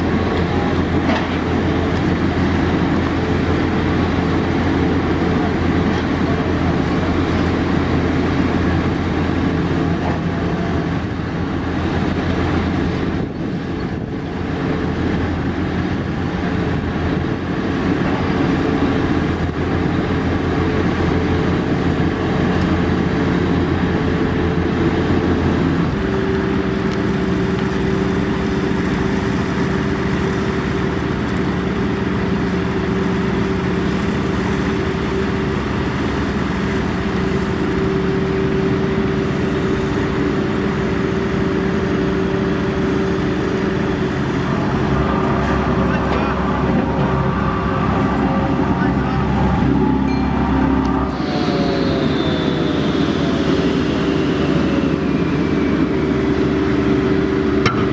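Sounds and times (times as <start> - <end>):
diesel machinery engine drone: 0.0 - 57.9.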